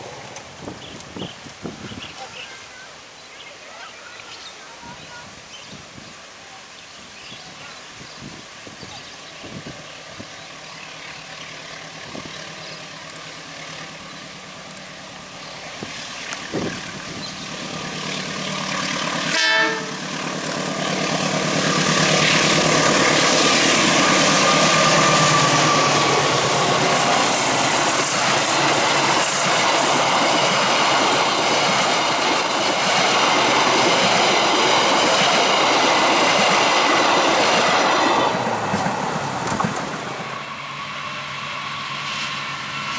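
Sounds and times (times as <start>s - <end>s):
train wheels clacking over rails: 15.9s - 40.4s
train horn: 19.2s - 21.1s.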